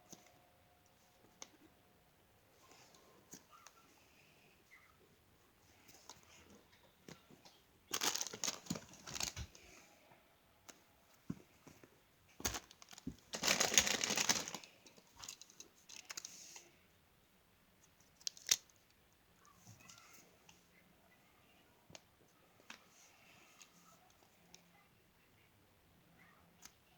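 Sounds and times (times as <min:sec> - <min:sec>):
crinkly plastic rustling: 0:05.8 - 0:09.8, 0:11.3 - 0:16.7, 0:18.0 - 0:18.9.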